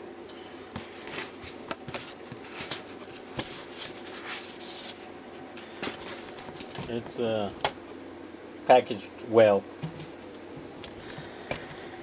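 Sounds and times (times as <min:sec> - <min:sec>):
packaging rustling and scraping: 0:00.8 - 0:07.0, 0:09.8 - 0:11.3.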